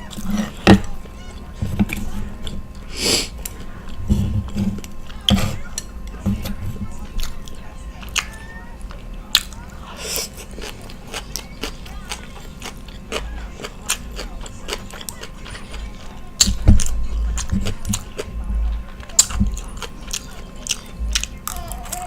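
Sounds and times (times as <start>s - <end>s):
chewing and eating: 0.0s - 22.0s.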